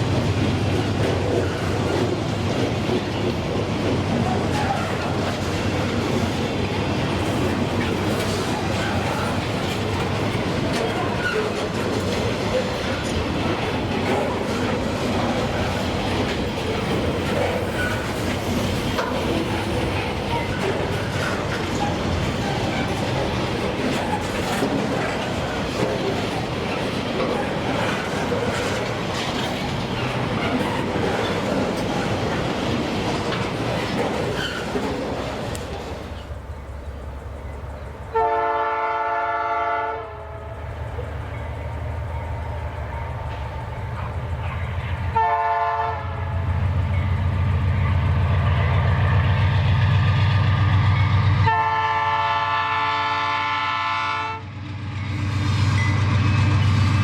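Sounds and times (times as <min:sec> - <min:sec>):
locomotive engine rumble: 0:00.0 - 0:57.0
train wheels clattering on rails: 0:00.0 - 0:57.0
locomotive horn blasts: 0:38.2 - 0:40.6, 0:45.2 - 0:46.2, 0:51.4 - 0:54.5.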